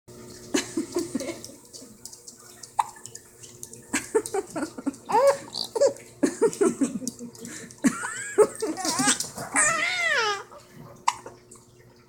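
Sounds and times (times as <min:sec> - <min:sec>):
baby giggling: 0:04.0 - 0:06.0, 0:08.3 - 0:10.5
baby squealing: 0:08.8 - 0:10.5.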